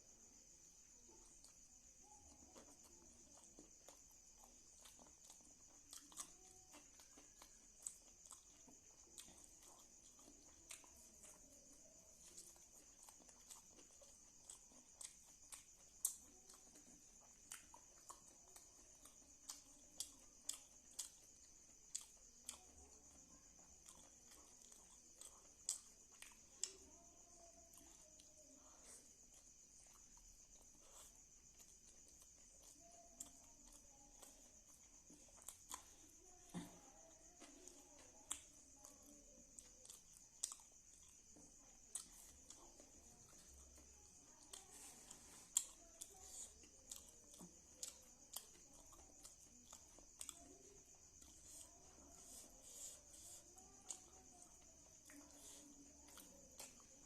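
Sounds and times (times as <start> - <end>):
wet chewing and lip-smacking: 0.4 - 57.0.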